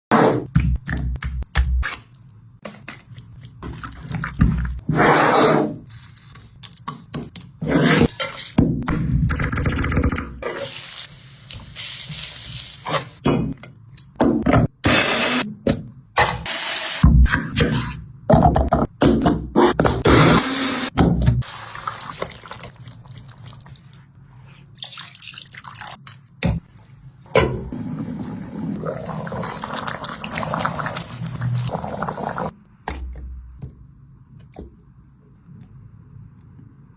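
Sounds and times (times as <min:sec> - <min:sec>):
water running into a sink: 0:27.8 - 0:32.5.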